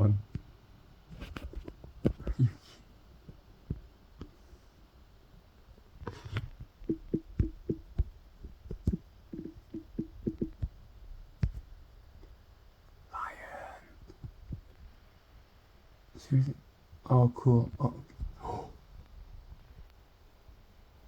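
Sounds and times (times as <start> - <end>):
short dull taps: 6.8 - 10.8.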